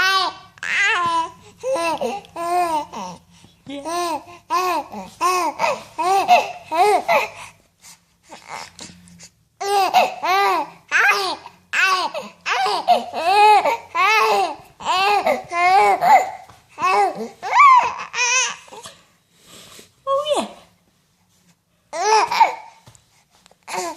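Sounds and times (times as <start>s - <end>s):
baby cooing and babbling: 0.0s - 7.4s, 8.3s - 9.0s, 9.6s - 19.0s, 21.9s - 22.8s, 23.7s - 23.9s.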